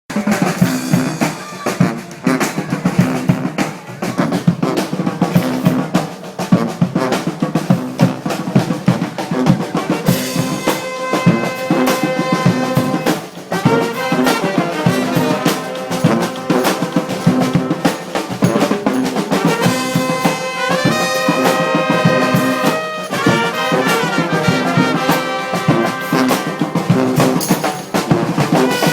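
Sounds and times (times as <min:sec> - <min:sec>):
brass street band playing: 0:00.1 - 0:28.9
snare and bass drum rhythm: 0:00.1 - 0:28.9
sustained horn notes: 0:09.2 - 0:27.6, 0:28.3 - 0:28.9.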